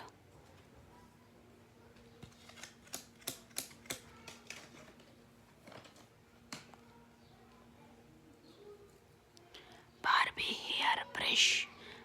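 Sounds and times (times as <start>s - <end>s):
plastic clicks and taps: 2.0s - 6.8s.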